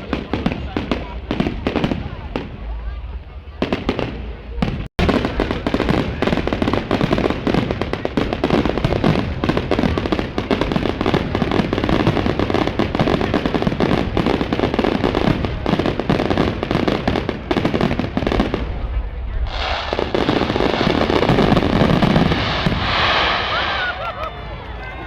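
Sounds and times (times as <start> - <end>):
firework bangs and crackles: 0.0 - 25.0.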